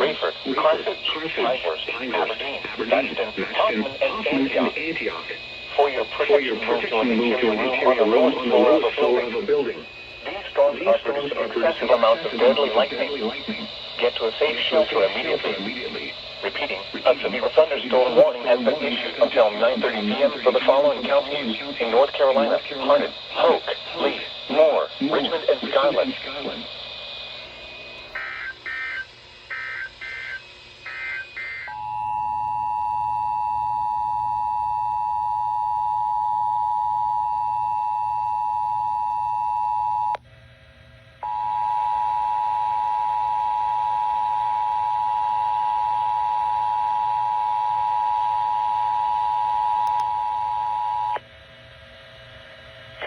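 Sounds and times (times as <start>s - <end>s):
screechy digital data bursts: 0.0s - 35.3s
two-tone attention signal: 41.2s - 51.2s.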